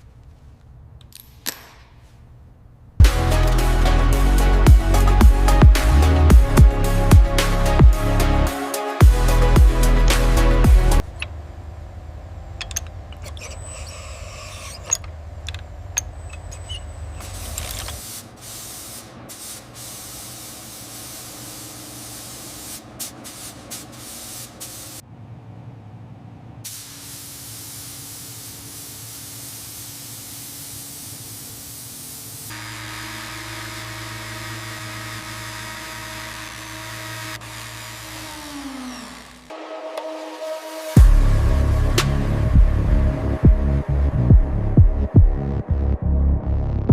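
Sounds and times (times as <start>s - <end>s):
music: 3.0s - 11.0s, 39.5s - 46.9s
clicks: 12.6s - 13.6s
spray hissing: 17.2s - 25.0s, 26.7s - 33.1s.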